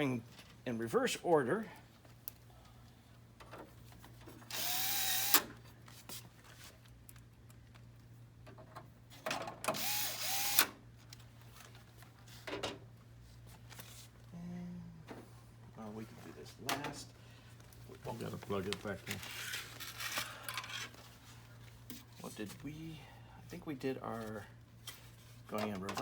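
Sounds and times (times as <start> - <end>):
cordless drill whining: 4.5 - 5.5, 9.8 - 10.7.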